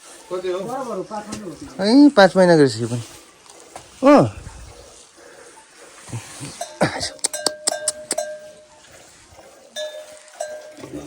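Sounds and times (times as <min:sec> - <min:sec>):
metal bell clanking: 0:06.6 - 0:08.8, 0:09.8 - 0:11.0.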